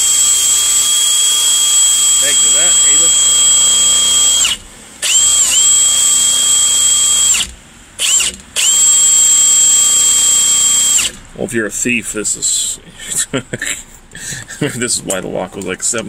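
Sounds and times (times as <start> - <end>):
power drill whining: 0.0 - 11.2.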